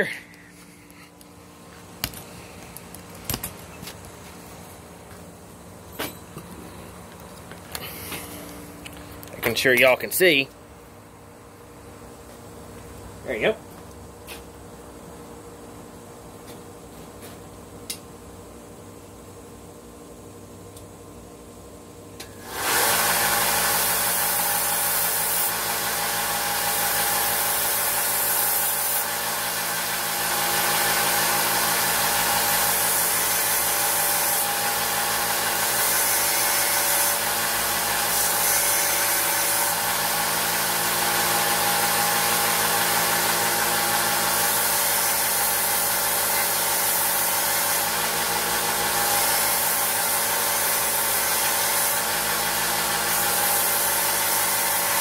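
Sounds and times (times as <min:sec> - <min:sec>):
belt sander sanding metal: 0:22.5 - 0:55.0.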